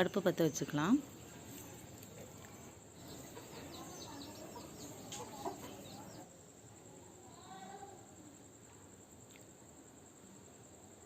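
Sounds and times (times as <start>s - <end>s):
faint bird calls: 1.3s - 6.3s.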